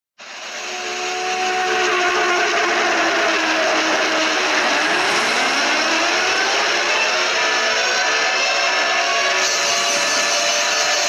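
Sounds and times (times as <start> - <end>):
sliding pitch tones: 1.3 - 9.8
ocean waves rushing: 4.1 - 7.8.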